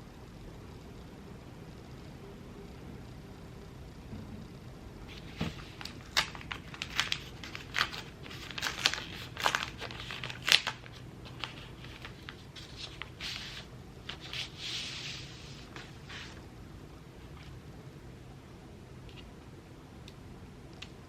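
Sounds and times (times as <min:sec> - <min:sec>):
plastic packaging crinkling: 0:05.1 - 0:14.6.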